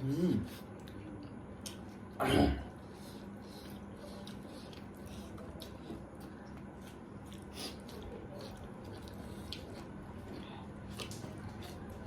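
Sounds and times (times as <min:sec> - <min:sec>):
wet chewing of food: 0:02.8 - 0:12.0.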